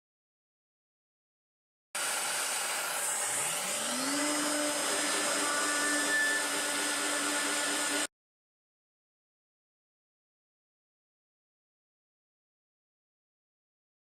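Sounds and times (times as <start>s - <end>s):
milling machine spindle whine: 2.9s - 8.1s.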